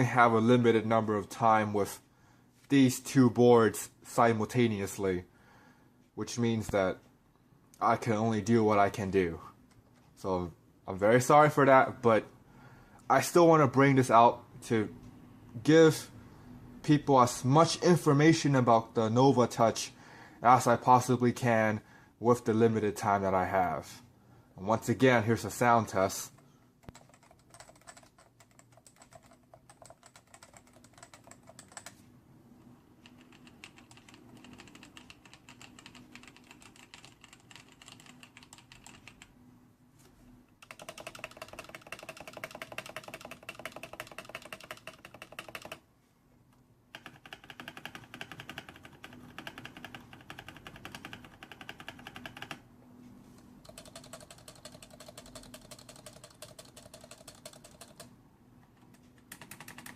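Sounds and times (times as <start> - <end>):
rapid keyboard typing: 26.0 - 32.1, 32.9 - 39.4, 40.6 - 45.8, 46.9 - 52.6, 53.4 - 58.2, 58.8 - 59.9.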